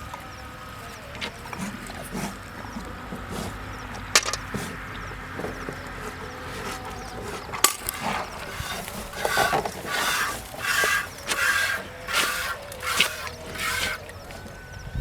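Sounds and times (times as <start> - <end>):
milk squirting into a bucket: 0.0 - 14.6.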